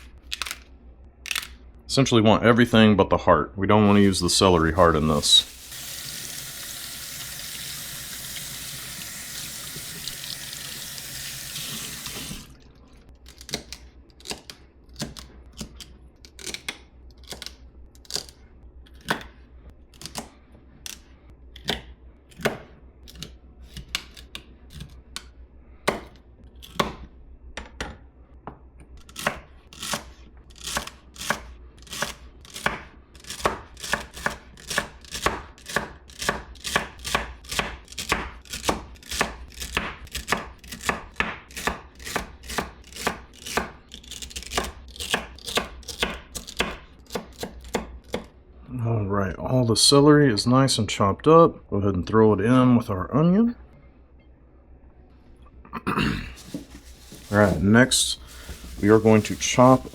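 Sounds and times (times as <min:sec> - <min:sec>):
kitchen tap running: 0:03.9 - 0:12.6
knife chopping on cutting board: 0:25.8 - 0:26.2, 0:26.8 - 0:27.0, 0:29.2 - 0:43.8, 0:44.4 - 0:48.3.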